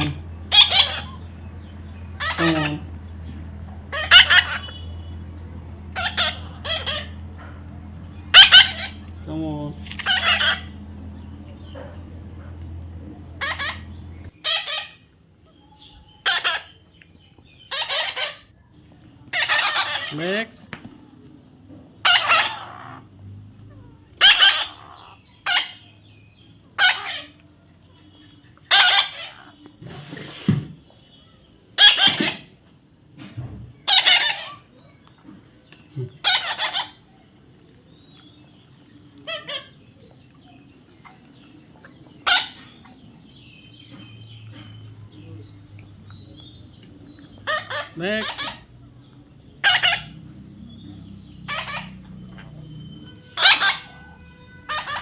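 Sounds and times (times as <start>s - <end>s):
parrot squawking: 0.0s - 3.1s, 3.8s - 5.2s, 5.9s - 7.5s, 8.2s - 9.2s, 9.8s - 10.9s, 13.4s - 16.8s, 17.6s - 18.6s, 19.2s - 20.5s, 22.0s - 23.1s, 24.2s - 25.9s, 26.8s - 27.4s, 28.7s - 29.6s, 31.8s - 32.6s, 33.8s - 34.8s, 36.1s - 37.2s, 39.2s - 41.5s, 42.1s - 43.0s, 47.3s - 48.8s, 49.5s - 55.0s.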